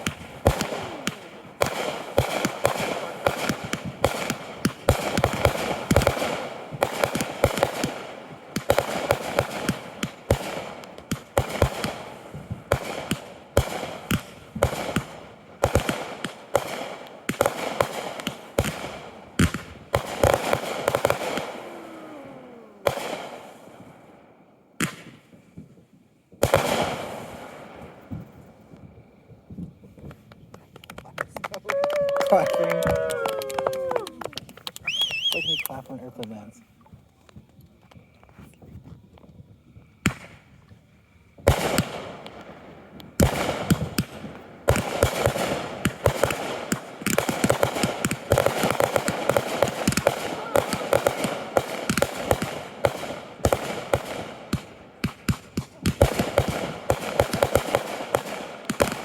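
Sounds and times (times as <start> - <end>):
fireworks bursts and bangs: 0.0 - 59.0
fireworks crackling: 0.0 - 59.0
falling firework whistle: 20.8 - 23.9, 31.6 - 35.8.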